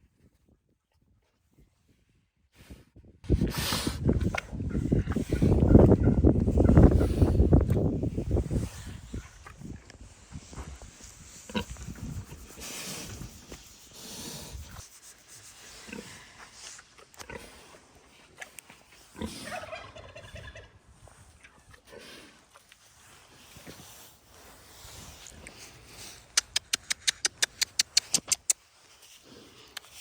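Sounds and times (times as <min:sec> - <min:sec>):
farmyard sounds: 0:03.3 - 0:14.8, 0:15.6 - 0:30.0
turkey gobbling: 0:19.4 - 0:20.7
rapid sharp clicks: 0:26.3 - 0:28.6.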